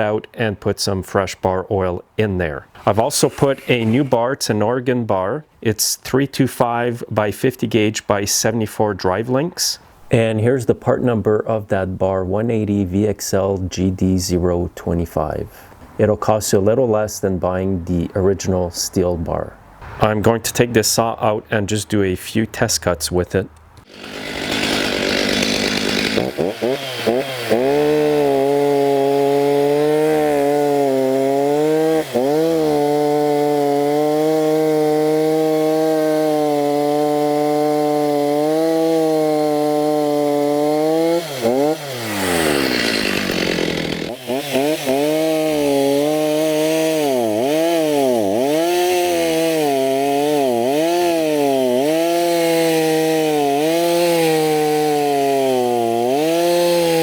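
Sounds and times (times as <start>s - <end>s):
chainsaw cutting wood: 2.8s - 4.3s, 23.8s - 57.0s.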